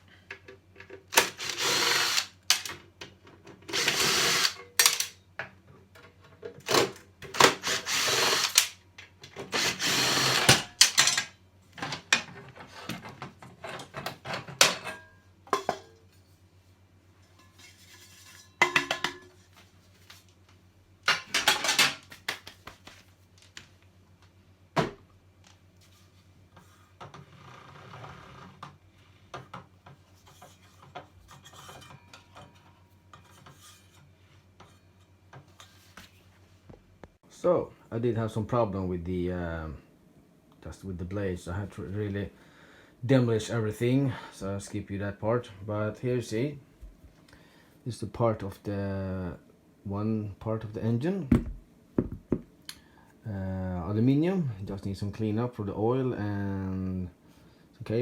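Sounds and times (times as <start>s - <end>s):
power drill bursts: 1.2s - 2.6s, 3.7s - 5.0s, 7.4s - 8.8s, 9.5s - 10.8s.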